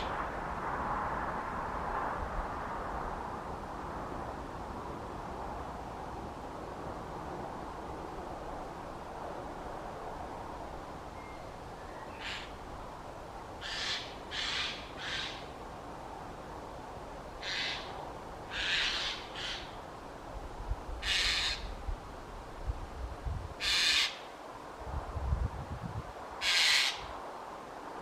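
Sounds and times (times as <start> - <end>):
bird harsh rasping calls: 12.1 - 12.6, 13.6 - 15.5, 17.4 - 17.9, 18.5 - 19.8, 21.0 - 21.7, 23.6 - 24.2, 26.4 - 27.1.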